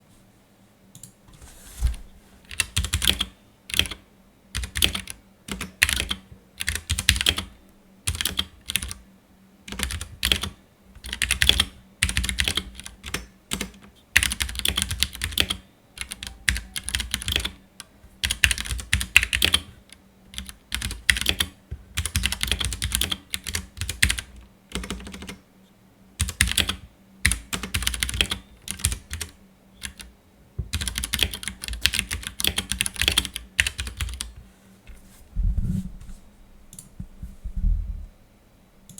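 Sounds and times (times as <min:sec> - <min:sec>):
mechanical keyboard typing: 0:02.5 - 0:04.0, 0:04.6 - 0:07.5, 0:08.1 - 0:09.0, 0:09.7 - 0:17.6, 0:18.2 - 0:19.7, 0:20.3 - 0:25.4, 0:26.2 - 0:30.1, 0:30.7 - 0:34.3.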